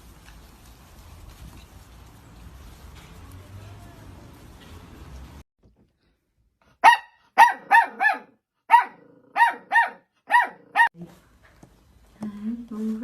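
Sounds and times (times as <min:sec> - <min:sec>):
puppy yapping: 0:06.8 - 0:10.9.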